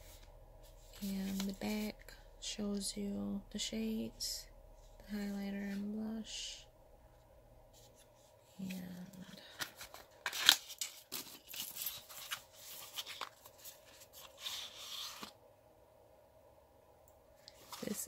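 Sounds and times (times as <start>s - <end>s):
cardboard packaging scraping: 9.5s - 15.4s.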